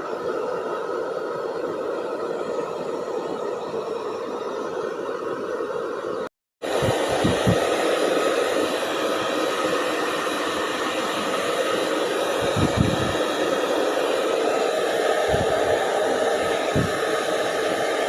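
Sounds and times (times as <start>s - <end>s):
hair dryer blowing: 6.6s - 18.0s.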